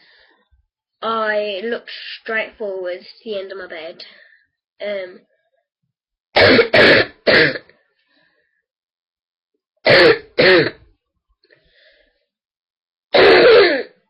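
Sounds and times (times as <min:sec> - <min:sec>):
woman's deep barking coughs: 0:06.4 - 0:07.7, 0:09.9 - 0:10.9, 0:13.2 - 0:14.0.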